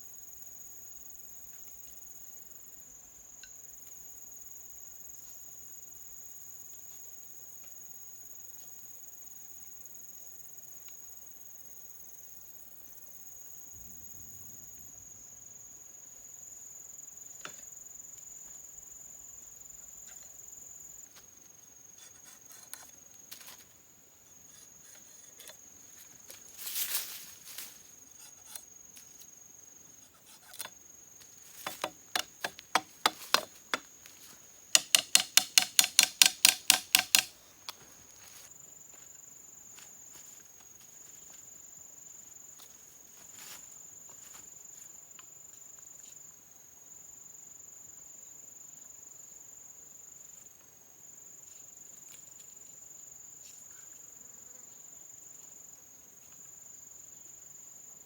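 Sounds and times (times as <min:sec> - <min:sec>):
crickets chirping drone: 0:00.0 - 0:58.0
sharp knocks: 0:31.6 - 0:33.9, 0:34.8 - 0:37.3.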